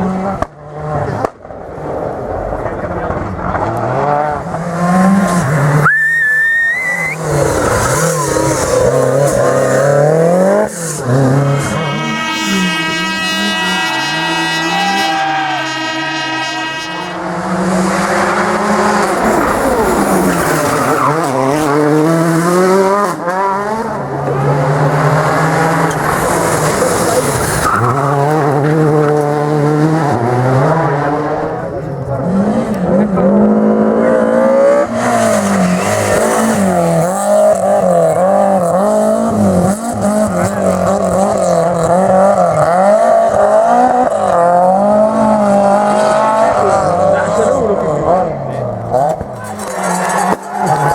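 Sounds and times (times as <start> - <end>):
rally car engines revving: 0.0 - 50.9
tyre squeal: 5.8 - 8.8.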